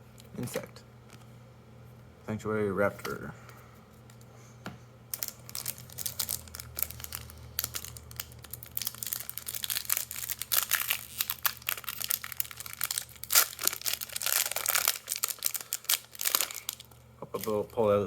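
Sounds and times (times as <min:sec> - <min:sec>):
steady low hum: 0:00.0 - 0:18.0
foil wrapper crinkling and tearing: 0:05.1 - 0:18.0.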